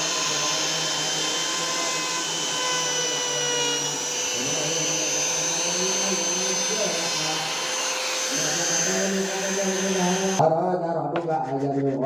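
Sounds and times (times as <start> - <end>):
power tool motor whine: 0.0 - 10.4.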